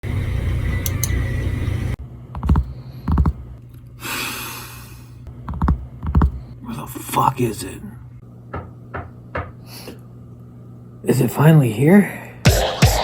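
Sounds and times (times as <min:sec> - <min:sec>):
knocking on a door: 0:08.5 - 0:09.6.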